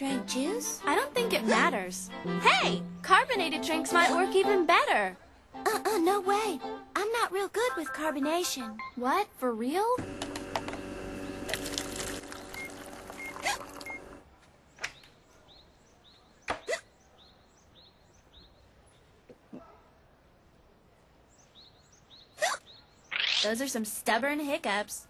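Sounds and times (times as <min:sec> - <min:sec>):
girl hiccuping: 0:22.4 - 0:22.6.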